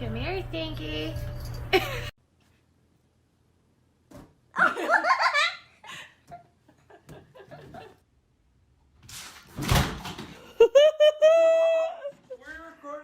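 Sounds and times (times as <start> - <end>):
person laughing: 1.7 - 2.1, 10.5 - 12.2.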